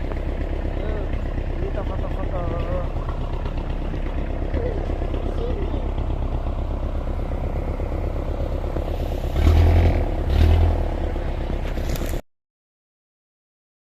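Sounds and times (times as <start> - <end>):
off-road vehicle engine running: 0.0 - 12.2.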